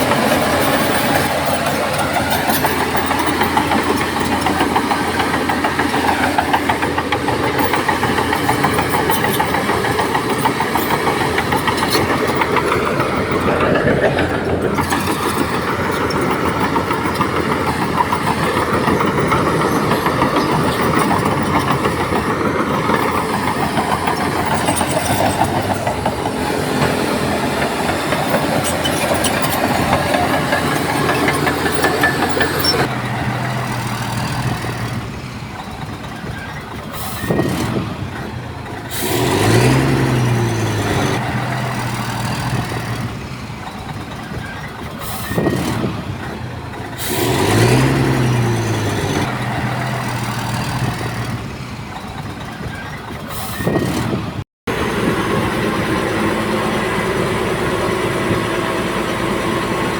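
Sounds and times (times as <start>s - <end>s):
diesel machinery running: 0.0s - 59.9s
engine revving: 37.0s - 43.3s, 45.1s - 51.7s.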